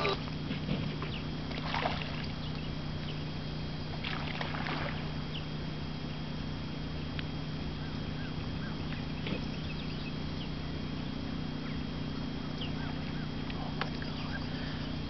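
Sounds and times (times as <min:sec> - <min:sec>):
paddle splashing water: 0:00.0 - 0:02.7, 0:03.8 - 0:05.2
steady low hum: 0:00.0 - 0:15.0.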